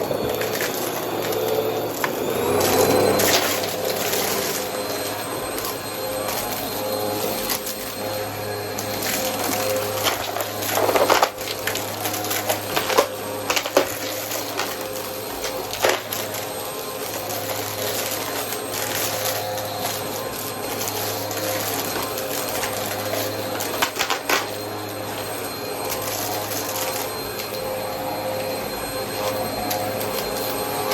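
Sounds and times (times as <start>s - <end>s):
vacuum cleaner humming: 0.0s - 30.9s.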